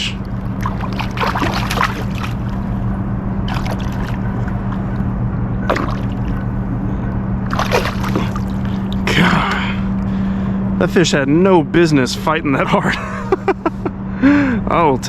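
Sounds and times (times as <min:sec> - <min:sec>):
steady low hum: 0:00.0 - 0:15.0
fish splashing at water surface: 0:00.4 - 0:02.7, 0:03.5 - 0:04.9, 0:05.6 - 0:06.4, 0:07.4 - 0:09.0.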